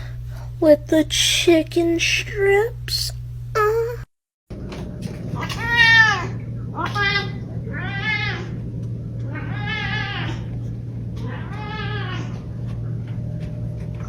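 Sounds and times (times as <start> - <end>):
steady low hum: 0.0 - 14.0
cat meowing: 5.4 - 8.6, 9.3 - 10.5, 11.2 - 12.4.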